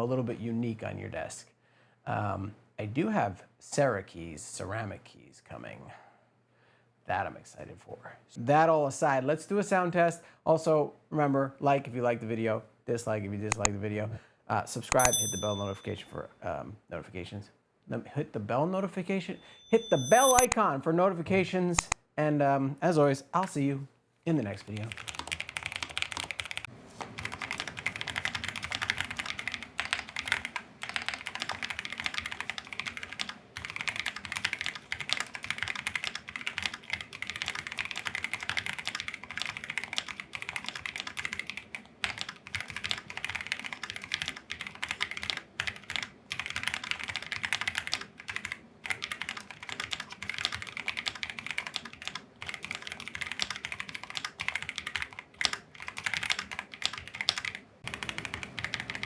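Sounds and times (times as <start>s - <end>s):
mechanical keyboard typing: 13.5s - 13.7s, 14.9s - 15.8s, 19.7s - 20.6s, 24.6s - 59.0s.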